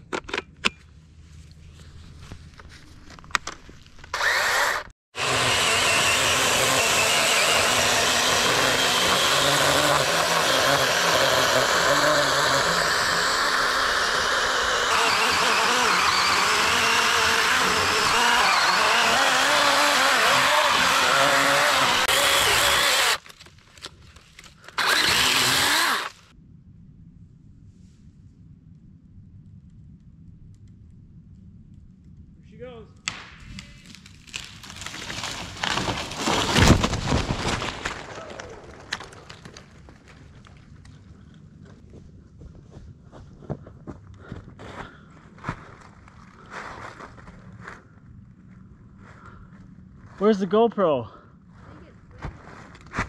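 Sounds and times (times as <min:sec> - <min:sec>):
electric chainsaw cutting wood: 0:04.1 - 0:23.3, 0:24.7 - 0:26.3.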